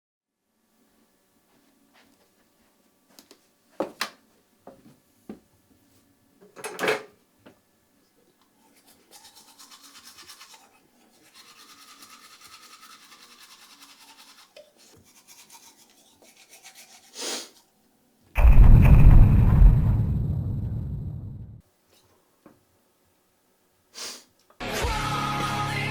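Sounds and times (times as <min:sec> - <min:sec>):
fast even scrubbing: 0:08.7 - 0:17.6
loud rushing sound: 0:18.4 - 0:21.6.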